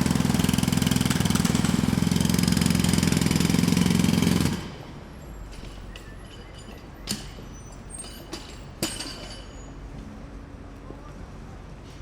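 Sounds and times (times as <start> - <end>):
jackhammer pounding: 0.0 - 5.0.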